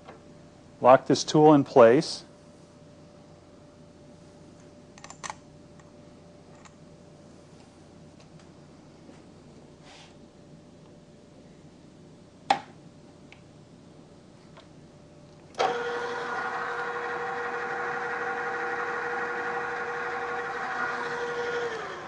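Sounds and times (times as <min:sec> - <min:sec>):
drill press motor whining: 0:15.6 - 0:22.0.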